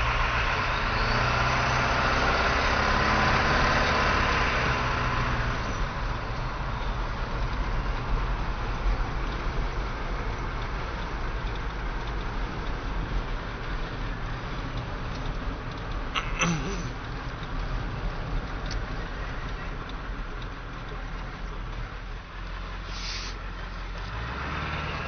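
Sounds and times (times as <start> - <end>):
short hiss: 22.8 - 23.4.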